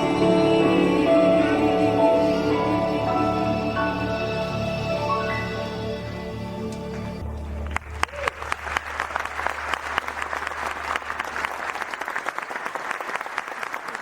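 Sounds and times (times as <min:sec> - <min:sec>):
audience applauding: 0:06.9 - 0:14.0.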